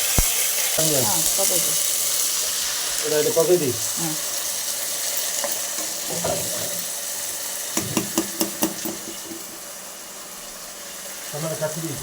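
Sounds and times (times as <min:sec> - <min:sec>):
food sizzling in hot oil: 0:00.0 - 0:12.0
utensil clinking against pan: 0:07.8 - 0:09.5.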